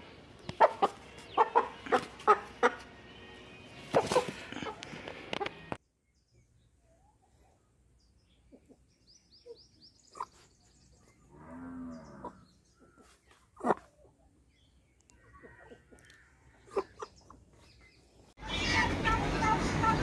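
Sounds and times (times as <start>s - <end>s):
chickens clucking: 0.4s - 3.0s, 3.8s - 5.8s, 8.4s - 10.5s, 12.2s - 14.3s, 15.2s - 17.7s.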